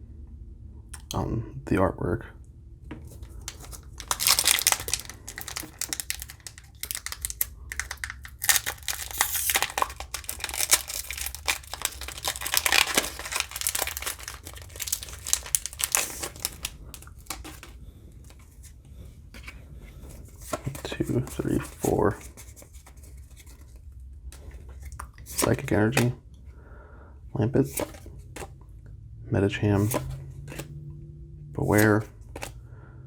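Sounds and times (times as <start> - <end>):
foil pack crinkling and tearing: 3.1 - 17.8, 25.3 - 26.1.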